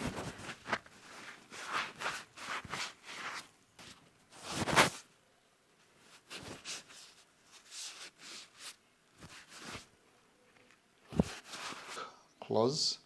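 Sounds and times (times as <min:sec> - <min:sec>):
scratchy rubbing noises: 0:00.0 - 0:05.0.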